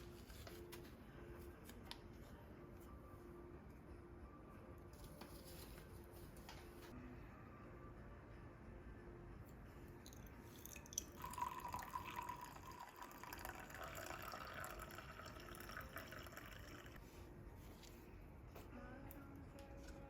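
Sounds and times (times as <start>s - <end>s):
liquid pouring into cup: 10.0s - 17.0s.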